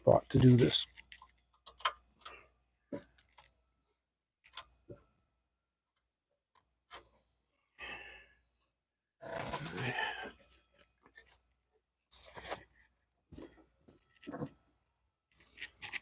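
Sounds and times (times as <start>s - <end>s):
person sighing: 9.6s - 10.3s.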